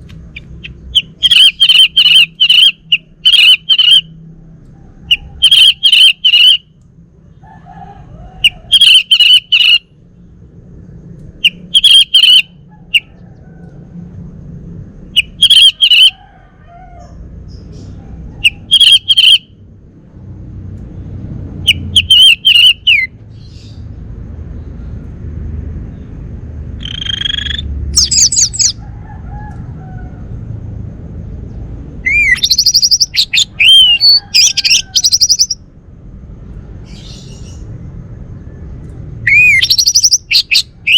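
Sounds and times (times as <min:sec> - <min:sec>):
thrush singing: 0:26.8 - 0:28.8, 0:32.0 - 0:35.6, 0:39.2 - 0:40.9.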